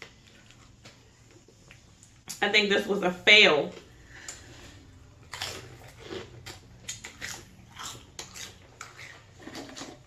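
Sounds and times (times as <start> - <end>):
crunchy chewing: 3.8 - 10.0.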